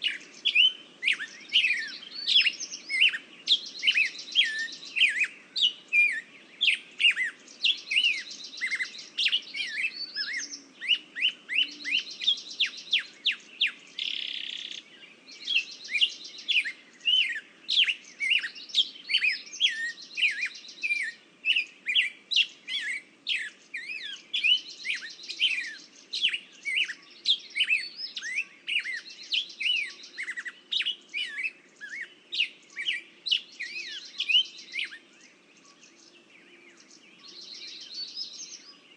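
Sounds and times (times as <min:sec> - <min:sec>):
songbirds chirping downward: 0:00.0 - 0:38.9.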